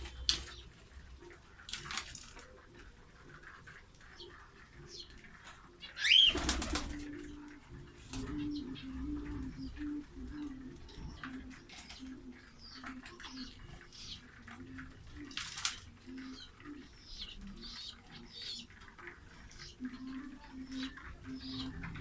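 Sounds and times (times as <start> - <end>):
pigeons cooing: 0.0 - 22.0
wings flapping: 4.5 - 10.6, 14.2 - 16.7.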